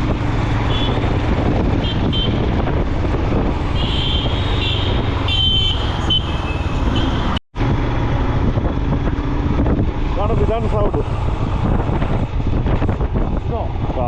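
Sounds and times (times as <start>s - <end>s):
rumble of passing vehicles: 0.0s - 14.0s
car horn toots: 0.7s - 1.0s, 1.8s - 2.5s, 3.8s - 7.4s.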